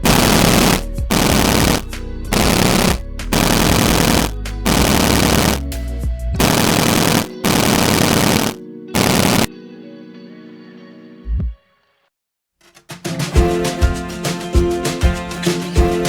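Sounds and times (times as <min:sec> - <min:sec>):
harsh noise hits: 0:00.0 - 0:05.6, 0:06.4 - 0:09.5
background music: 0:13.1 - 0:16.0.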